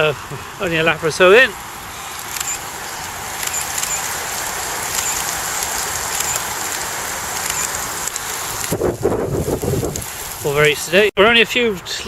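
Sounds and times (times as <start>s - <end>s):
rain hissing: 0.0s - 11.2s
drops ticking: 1.9s - 10.4s.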